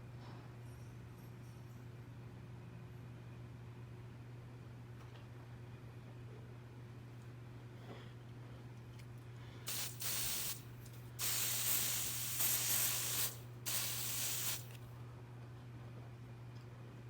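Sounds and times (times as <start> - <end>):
aerosol can spraying: 9.7 - 10.6, 11.2 - 14.8.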